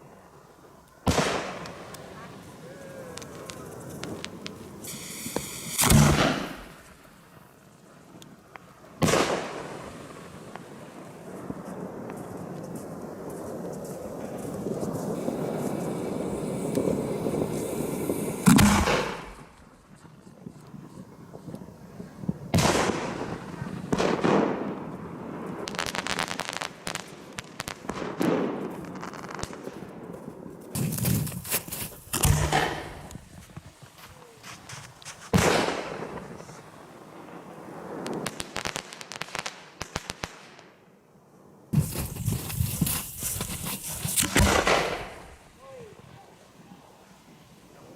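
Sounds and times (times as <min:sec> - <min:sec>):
firework bangs: 0:00.0 - 0:07.5, 0:08.9 - 0:40.8, 0:41.7 - 0:46.1
crackle of small sharp pops: 0:00.8 - 0:09.8, 0:18.4 - 0:21.6, 0:22.2 - 0:36.7, 0:38.0 - 0:40.8, 0:41.8 - 0:45.4
high-pitched hiss: 0:01.5 - 0:07.4, 0:14.4 - 0:19.6, 0:41.8 - 0:47.9.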